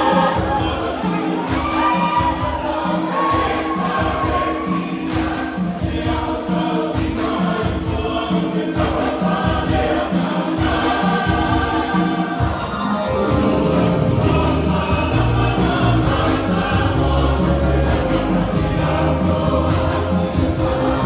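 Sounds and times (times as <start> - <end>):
choir singing: 0.0 - 21.0
accompaniment with low beat: 5.2 - 21.0.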